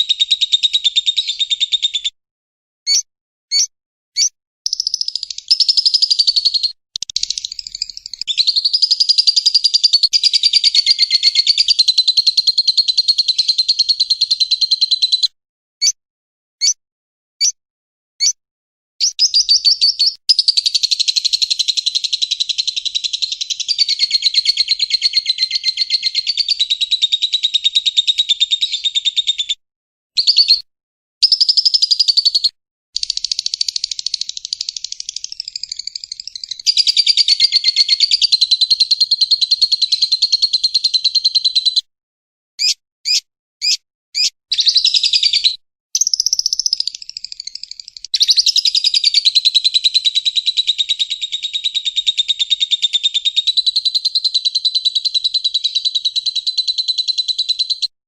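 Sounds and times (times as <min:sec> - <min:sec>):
bird chattering trills: 0:02.9 - 0:15.2, 0:31.2 - 0:41.7.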